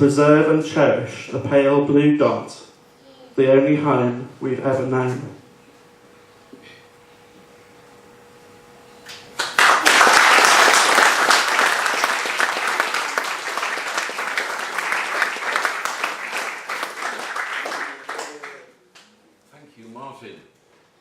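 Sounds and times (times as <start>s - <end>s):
audience applauding: 9.4s - 18.7s.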